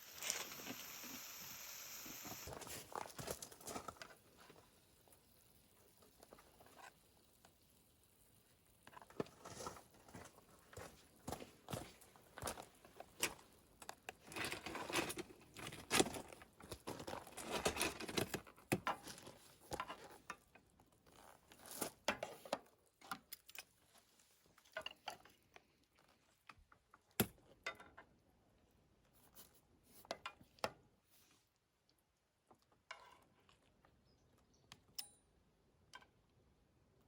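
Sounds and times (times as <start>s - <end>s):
small things clicking and rustling: 0.0s - 7.8s, 8.7s - 28.2s.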